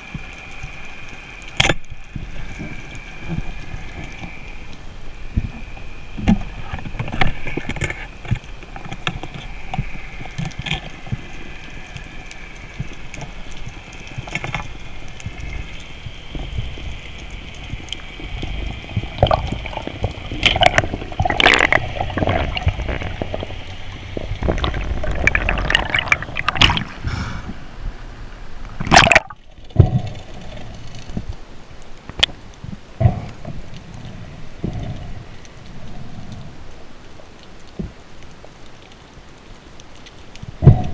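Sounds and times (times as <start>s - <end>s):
water splashing: 0.0s - 30.9s
faint steady whine: 0.0s - 40.9s
water sloshing and gurgling: 0.0s - 40.9s.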